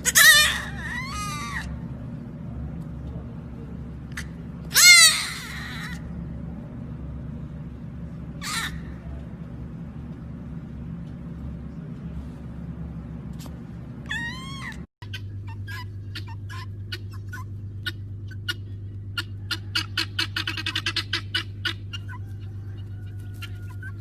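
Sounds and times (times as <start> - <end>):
pet animal calling: 0.0 - 1.9, 4.1 - 6.2, 8.4 - 9.3, 14.0 - 24.0
steady hum: 0.0 - 24.0.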